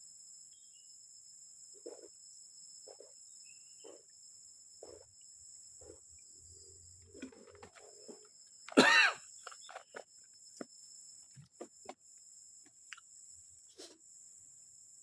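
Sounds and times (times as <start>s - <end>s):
forest insects droning: 0.0s - 15.0s.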